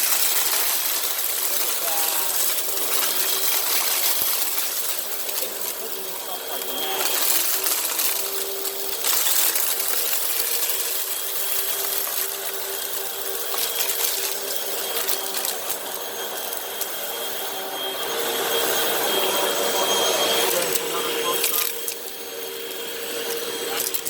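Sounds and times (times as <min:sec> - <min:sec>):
grit rattling into vacuum: 0:00.0 - 0:24.0
upright vacuum motor whine: 0:00.0 - 0:24.0.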